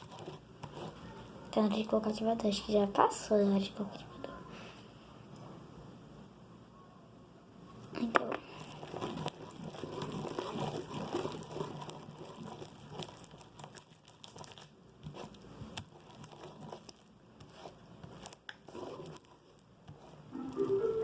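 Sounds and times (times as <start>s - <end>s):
hands kneading sticky slime: 7.9s - 20.8s.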